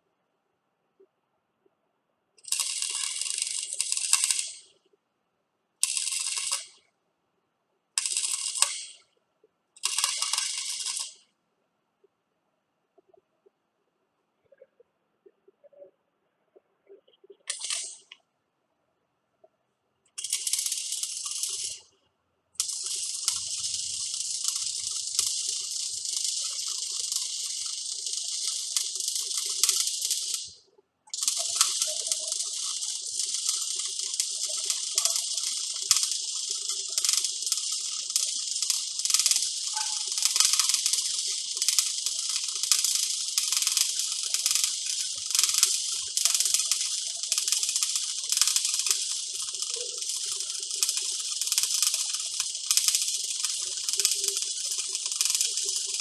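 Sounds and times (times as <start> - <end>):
welding arc crackling and sizzling: 2.4 - 4.7, 5.8 - 6.8, 8.0 - 9.1, 9.8 - 11.3, 17.5 - 18.2, 20.2 - 22.0, 22.6 - 56.0.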